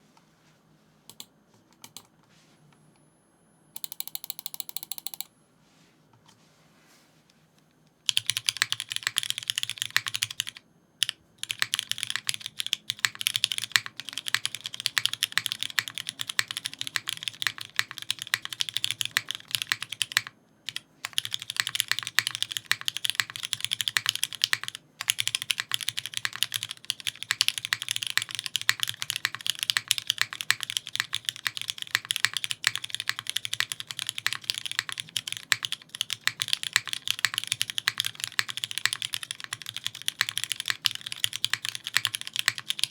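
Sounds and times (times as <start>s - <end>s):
mechanical keyboard typing: 1.1s - 2.1s, 3.8s - 5.3s, 8.1s - 42.9s.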